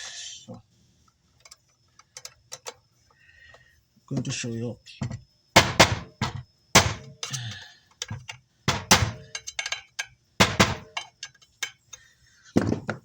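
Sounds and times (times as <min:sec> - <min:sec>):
hard parts knocking on workbench: 0:05.0 - 0:07.4, 0:08.0 - 0:09.8, 0:10.4 - 0:11.2, 0:12.6 - 0:13.0.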